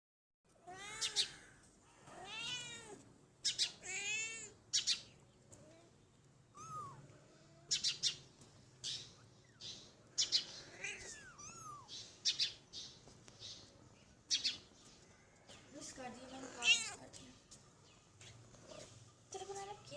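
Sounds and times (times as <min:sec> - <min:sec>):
kitten meowing: 0:00.7 - 0:01.5, 0:02.2 - 0:04.5, 0:06.6 - 0:07.0, 0:10.3 - 0:11.9, 0:16.4 - 0:17.0.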